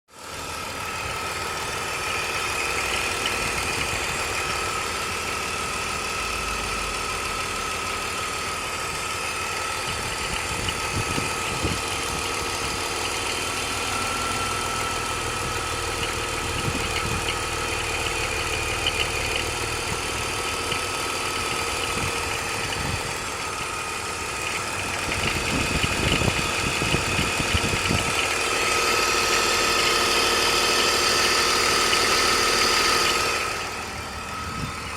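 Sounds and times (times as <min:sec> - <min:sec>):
car engine idling: 0:00.1 - 0:34.9.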